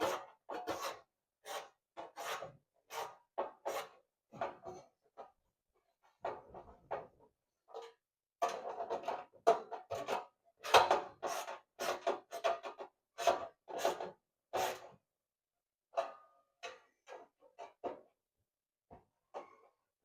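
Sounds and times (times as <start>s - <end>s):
hand tool scraping strokes: 0.0s - 4.0s.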